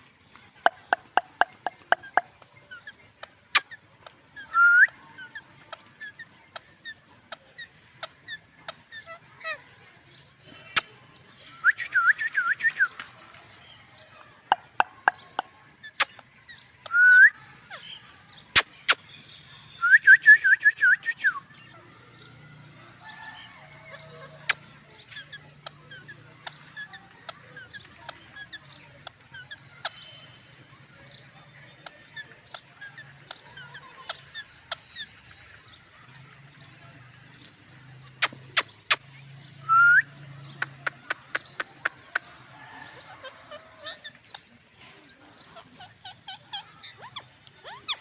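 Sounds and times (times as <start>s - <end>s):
parrots chirping: 0.4s - 9.6s, 14.4s - 19.4s, 22.4s - 36.4s, 38.1s - 39.1s, 40.4s - 48.0s
sharp clicks: 38.2s - 39.0s.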